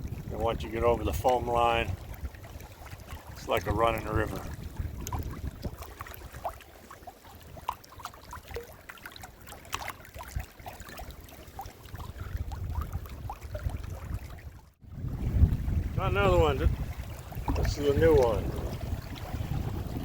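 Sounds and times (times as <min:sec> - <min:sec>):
wind rumble on microphone: 0:00.0 - 0:06.6, 0:11.8 - 0:20.0
water lapping against kayak hull: 0:00.0 - 0:20.0
small splashes: 0:01.1 - 0:15.4.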